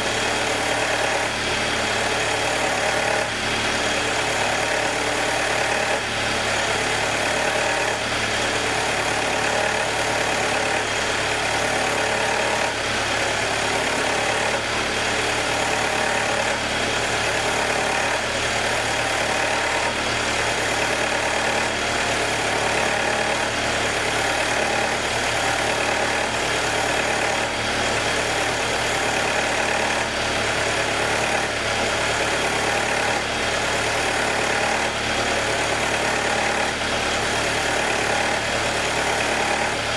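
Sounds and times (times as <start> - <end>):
car engine idling: 0.0 - 39.9
engine ticking: 0.0 - 39.9.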